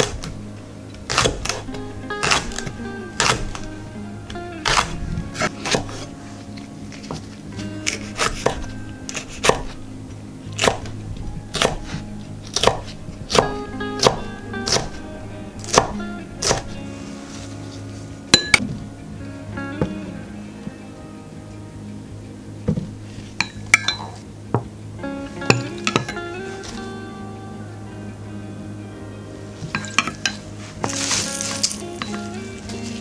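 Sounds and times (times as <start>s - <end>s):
background music: 0.0s - 33.0s
knife chopping on cutting board: 1.1s - 3.7s, 4.6s - 6.1s, 7.8s - 9.8s, 10.6s - 15.0s, 15.6s - 16.8s.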